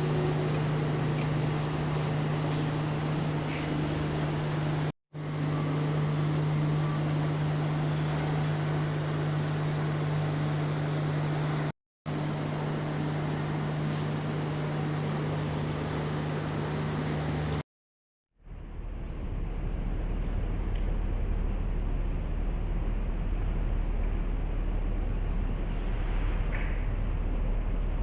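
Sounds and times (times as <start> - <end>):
mechanical hum with hiss: 0.0 - 17.6.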